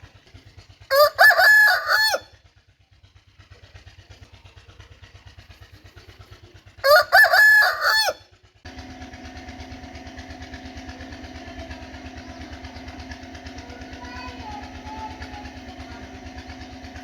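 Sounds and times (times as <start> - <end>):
rooster crowing: 0.9 - 2.3, 6.8 - 8.2
mechanical hum: 8.7 - 17.0.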